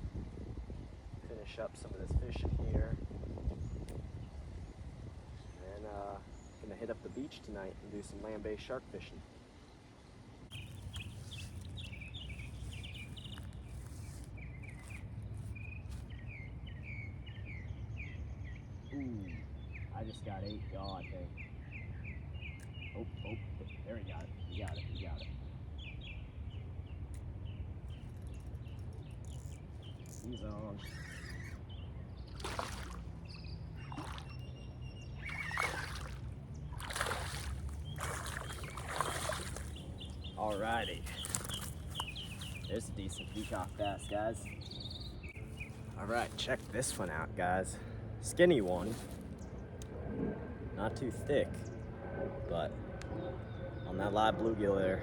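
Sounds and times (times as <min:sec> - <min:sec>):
low outdoor rumble: 0:00.0 - 0:55.0
birds chirping: 0:03.4 - 0:55.0
steady low rumble: 0:31.6 - 0:55.0
fish splashing at water surface: 0:32.3 - 0:33.2, 0:33.8 - 0:34.5, 0:35.2 - 0:40.0.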